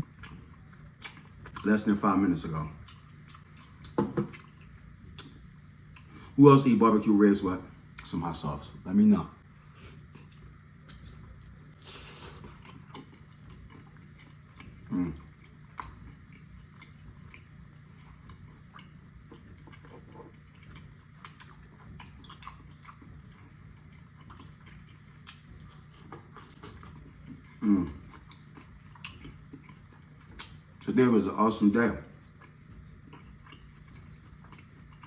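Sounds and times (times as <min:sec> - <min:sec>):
chewing with wet smacks: 0:00.0 - 0:06.3, 0:09.9 - 0:31.0, 0:32.0 - 0:35.0
low steady hum: 0:00.0 - 0:35.0
person humming mm: 0:14.9 - 0:15.2, 0:27.6 - 0:28.0.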